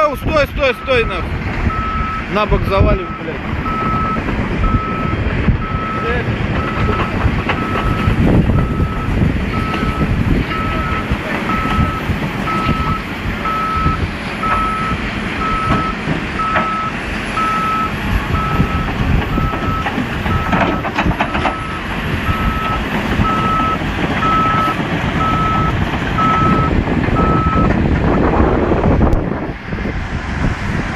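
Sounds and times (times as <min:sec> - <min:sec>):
reversing alarm beeping: 0:00.7 - 0:27.7.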